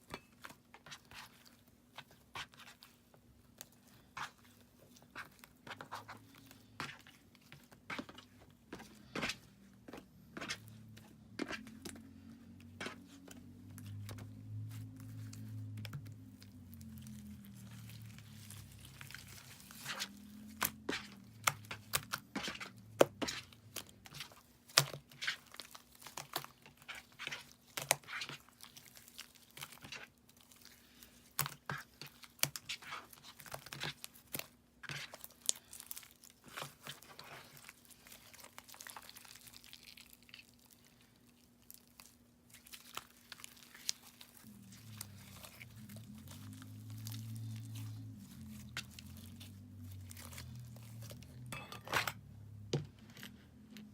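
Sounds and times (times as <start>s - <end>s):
slime squished by hand: 11.4s - 51.5s.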